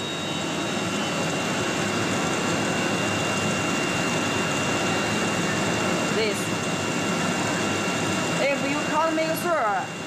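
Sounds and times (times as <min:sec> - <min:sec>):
thin high whine: 0:00.0 - 0:06.4.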